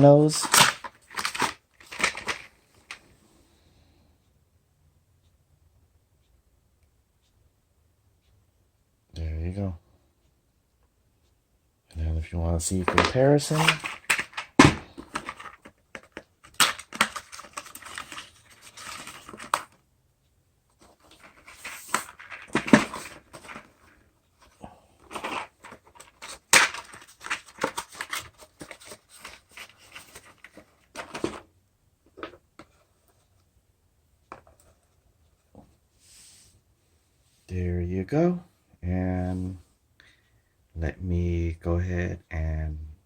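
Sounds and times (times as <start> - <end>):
scraping and rustling: 12.7 - 19.8, 20.7 - 31.5.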